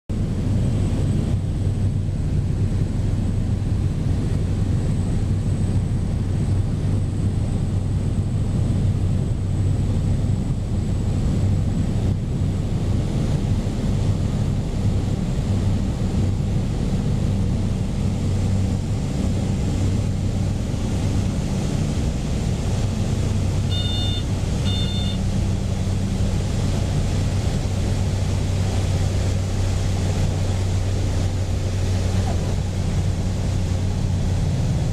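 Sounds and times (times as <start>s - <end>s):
turboprop engine drone: 0.1s - 34.9s
faint high whine: 23.5s - 25.9s
short beeps: 23.7s - 25.2s.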